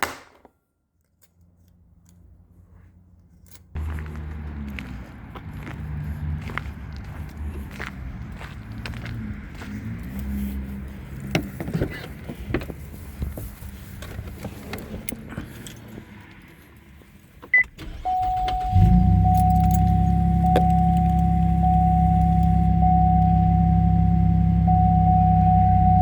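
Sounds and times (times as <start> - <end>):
keys rattling and clicking: 3.2 - 3.8, 10.9 - 17.4, 18.2 - 23.3
short high beep: 17.6 - 26.0.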